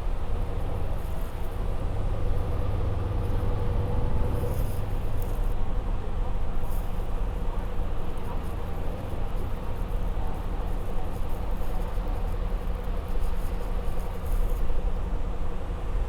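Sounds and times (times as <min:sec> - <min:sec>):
bus engine and road rumble: 0:00.0 - 0:05.6.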